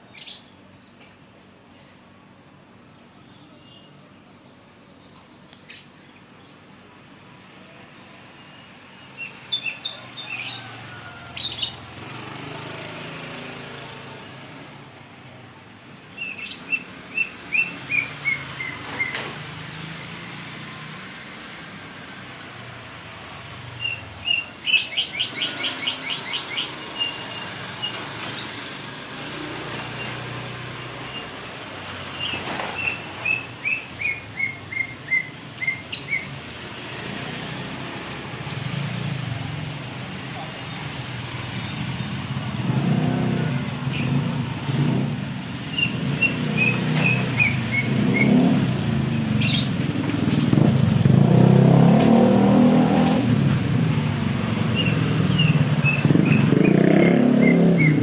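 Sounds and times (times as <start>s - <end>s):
bird singing whistled phrases: 32.8s - 36.3s, 57.4s - 58.0s.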